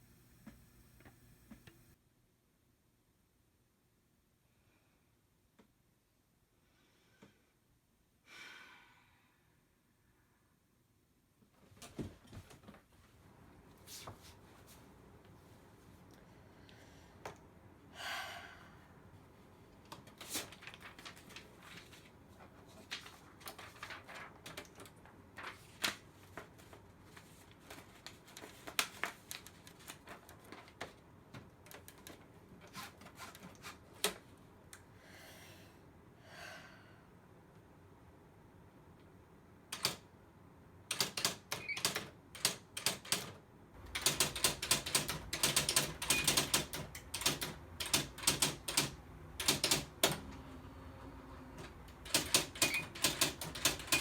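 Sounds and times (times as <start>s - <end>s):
low steady hum: 0.0s - 2.0s
typewriter keys clacking: 39.7s - 40.0s, 40.9s - 50.4s, 51.6s - 54.0s.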